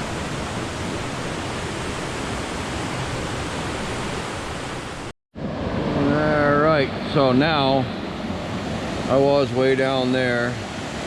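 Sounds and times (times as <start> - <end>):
stream water rushing: 0.0 - 11.0.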